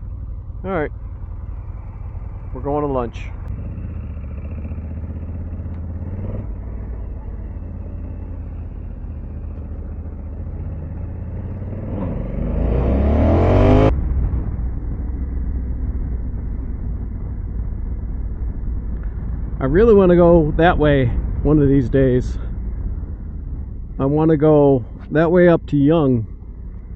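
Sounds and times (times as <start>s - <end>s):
motorcycle engine running: 0.0s - 26.9s
wind: 0.0s - 26.9s
sound rising in pitch: 10.6s - 14.0s.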